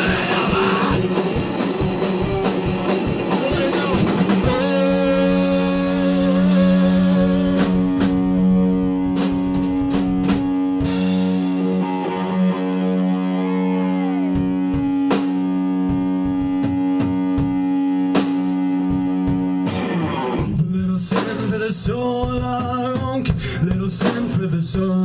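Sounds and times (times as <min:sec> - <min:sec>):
drum and cymbal hits: 0:00.0 - 0:12.4, 0:14.1 - 0:25.0
droning guitar chord: 0:04.4 - 0:20.6.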